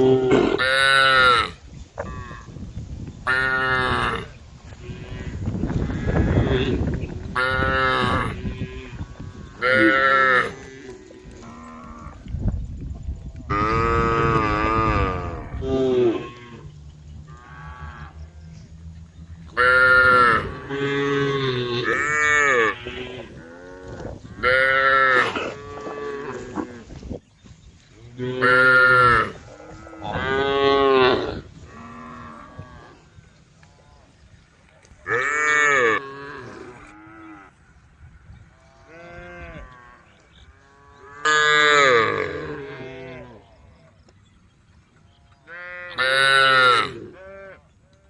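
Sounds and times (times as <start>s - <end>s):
distant cows mooing: 3.3s - 12.3s, 13.4s - 27.0s, 27.9s - 34.2s, 35.0s - 43.9s, 45.0s - 47.7s
cows mooing: 4.9s - 12.2s, 13.5s - 16.7s, 17.3s - 26.9s, 28.1s - 33.1s, 35.0s - 37.6s, 38.5s - 43.7s, 45.1s - 47.6s.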